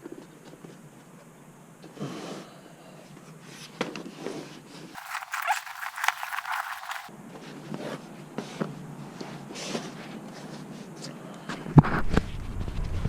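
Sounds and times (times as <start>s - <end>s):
plastic liner scraping rubber: 5.0s - 7.1s.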